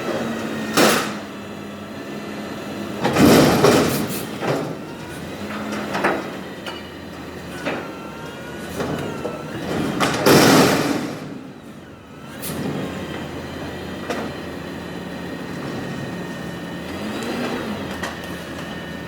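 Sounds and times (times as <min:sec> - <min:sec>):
garbage truck engine running: 0:00.0 - 0:19.0
dumpster slamming crash: 0:00.7 - 0:01.3, 0:03.0 - 0:06.4, 0:08.6 - 0:13.4.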